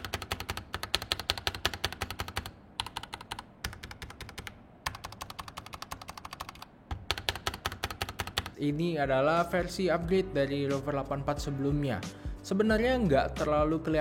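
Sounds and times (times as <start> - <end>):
mechanical keyboard typing: 0.0 - 8.6.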